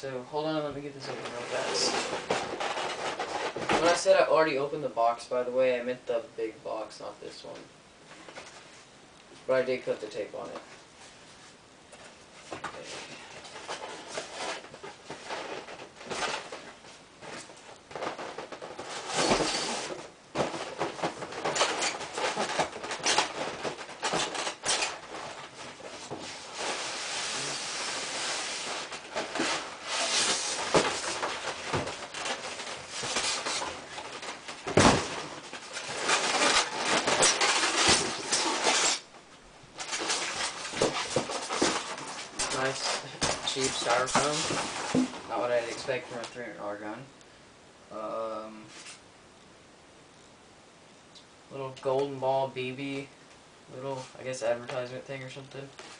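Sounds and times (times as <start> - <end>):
cardboard and packing rustling: 0.5 - 4.3, 10.4 - 47.0, 53.8 - 55.9.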